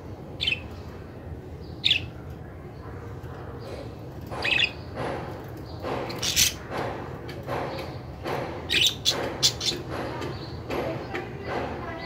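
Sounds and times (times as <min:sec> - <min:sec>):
budgerigars chirping and squawking: 0:00.4 - 0:00.8, 0:01.8 - 0:02.2, 0:04.3 - 0:04.9, 0:05.8 - 0:06.6, 0:08.7 - 0:10.6.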